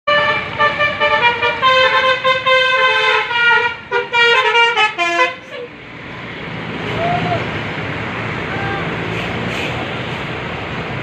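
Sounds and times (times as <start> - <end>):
multi-tone air horn tune: 0.1 - 5.7.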